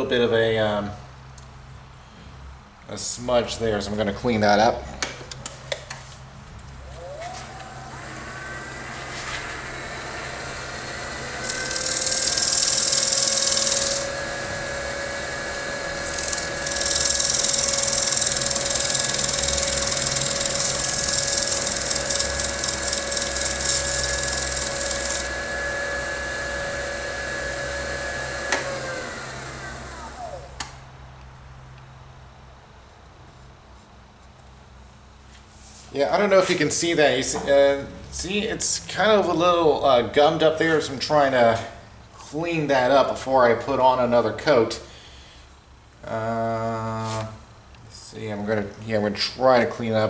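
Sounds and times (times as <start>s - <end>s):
wood lathe motor whine: 6.9s - 30.6s
sandpaper hissing on wood: 11.4s - 14.1s, 15.6s - 25.3s.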